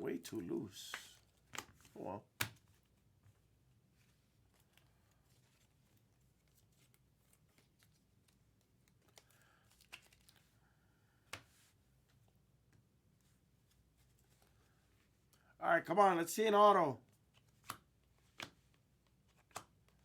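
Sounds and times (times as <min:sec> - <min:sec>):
soft clicks of card holders: 0:00.8 - 0:02.9, 0:04.4 - 0:10.6, 0:17.1 - 0:20.0.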